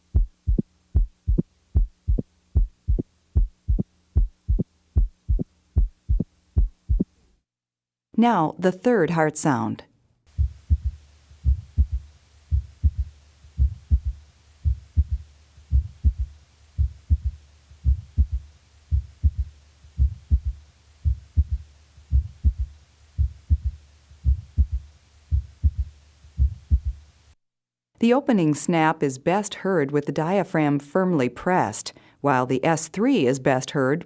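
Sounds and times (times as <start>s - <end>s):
heartbeat through stethoscope: 0.0s - 7.2s, 10.3s - 27.0s.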